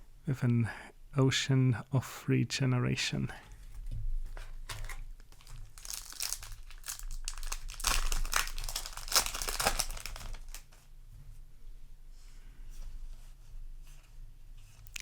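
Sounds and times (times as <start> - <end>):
foil wrapper crinkling: 4.6 - 10.8.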